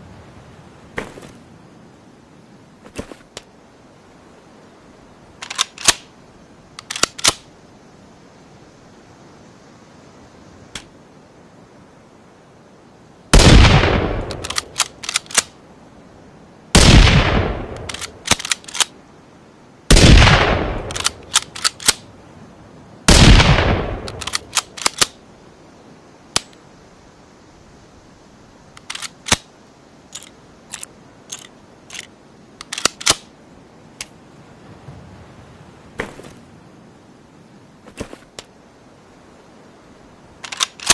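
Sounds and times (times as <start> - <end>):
rifle shots: 13.4 - 15.4, 16.8 - 18.6, 19.9 - 22.0, 23.1 - 25.1
sharp clicks: 14.2 - 15.5, 17.7 - 18.9, 20.8 - 22.0, 24.0 - 25.2, 26.3 - 26.6, 28.7 - 29.5, 30.1 - 33.3, 40.4 - 40.9.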